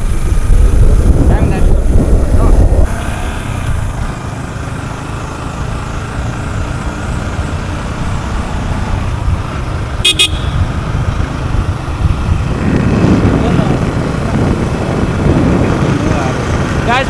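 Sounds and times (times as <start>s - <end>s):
motorcycle rumble: 0.0s - 17.0s
short horn beeps: 10.0s - 10.8s.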